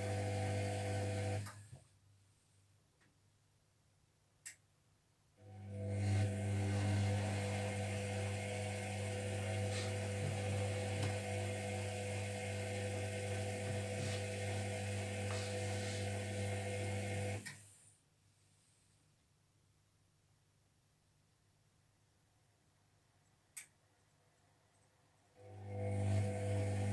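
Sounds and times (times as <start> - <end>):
washing machine drum humming: 7.4 - 17.4.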